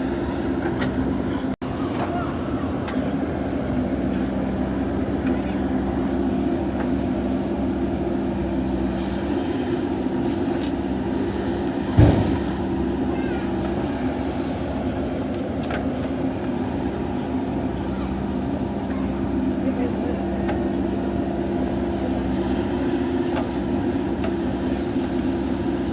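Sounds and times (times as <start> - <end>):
diesel engine running: 0.0 - 25.9
sharp thump: 11.9 - 12.6.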